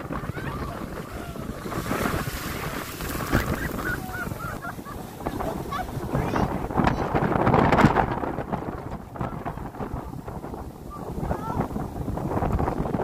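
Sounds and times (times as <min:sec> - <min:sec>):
sea surf: 0:00.0 - 0:13.0
wind buffeting microphone: 0:00.0 - 0:13.0.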